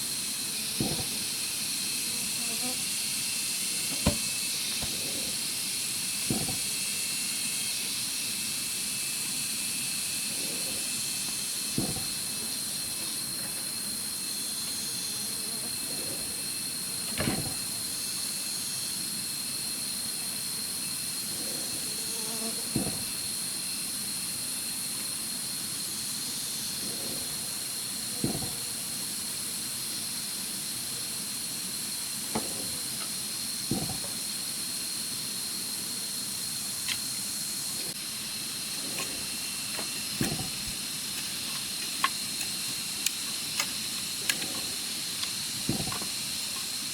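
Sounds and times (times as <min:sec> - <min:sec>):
steady high hiss: 0:00.0 - 0:46.9.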